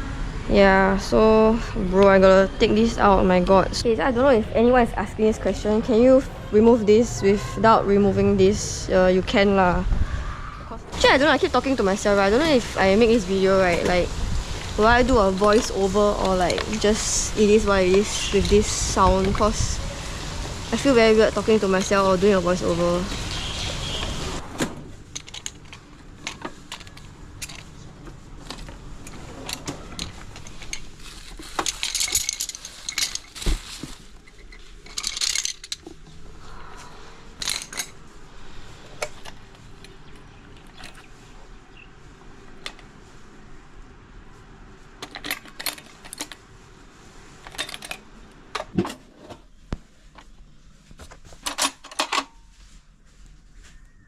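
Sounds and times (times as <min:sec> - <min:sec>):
metal tools and screws clinking: 0:25.1 - 0:27.8, 0:28.4 - 0:36.2, 0:37.4 - 0:38.0, 0:45.0 - 0:46.4, 0:47.4 - 0:48.7, 0:51.4 - 0:52.4
sharp clicks of parts handled: 0:25.1 - 0:27.8.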